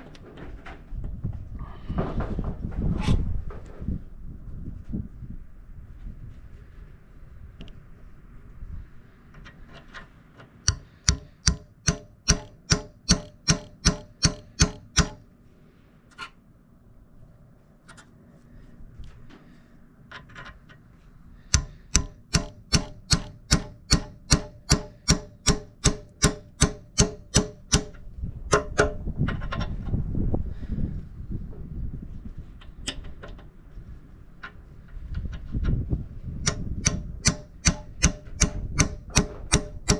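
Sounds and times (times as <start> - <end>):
hammer tapping steel: 10.7 - 15.2, 21.6 - 28.0, 36.5 - 39.9.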